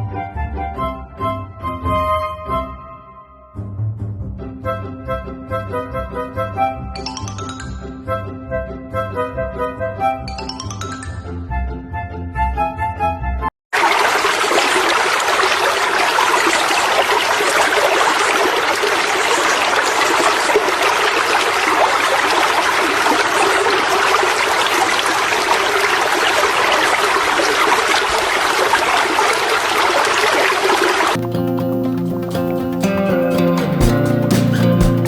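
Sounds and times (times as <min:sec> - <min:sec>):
running water rushing: 0:13.8 - 0:35.0.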